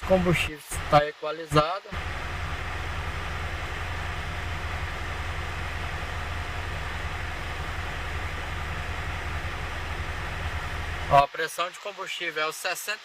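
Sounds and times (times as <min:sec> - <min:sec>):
diesel engine idling: 0:00.0 - 0:01.0, 0:02.0 - 0:11.2.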